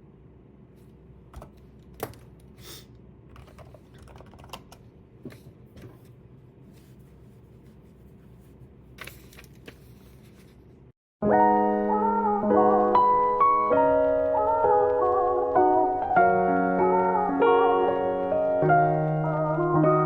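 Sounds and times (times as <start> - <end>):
faint room hum: 0.0 - 10.9.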